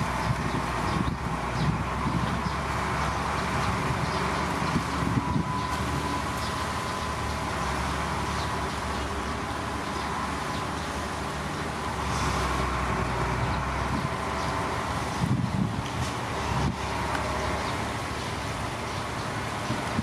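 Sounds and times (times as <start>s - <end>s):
heavy diesel machinery running: 0.0s - 20.0s.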